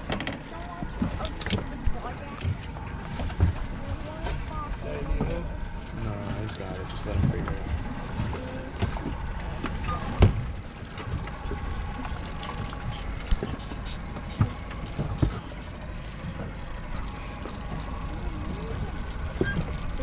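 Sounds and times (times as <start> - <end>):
wind and water rumble: 0.0 - 20.0
knocks on boat: 7.2 - 10.5.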